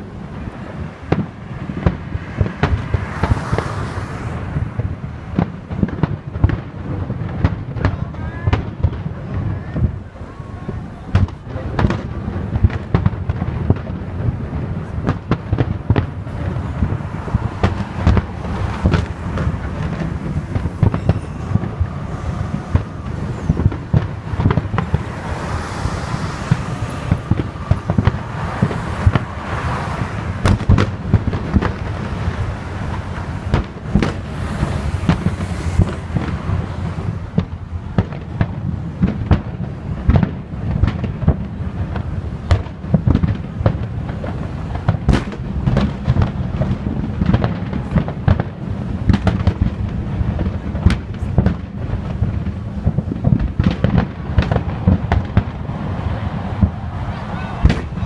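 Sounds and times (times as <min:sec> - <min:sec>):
fireworks bangs and booms: 0:00.0 - 0:58.0.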